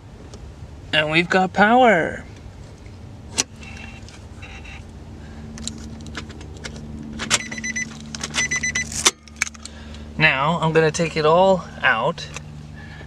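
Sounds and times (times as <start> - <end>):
car engine idling: 0.0 - 13.0
clicks and light rattles: 5.5 - 10.0.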